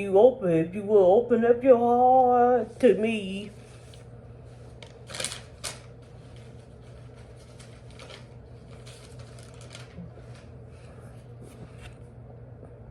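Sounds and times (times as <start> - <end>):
low steady hum: 0.0 - 12.9.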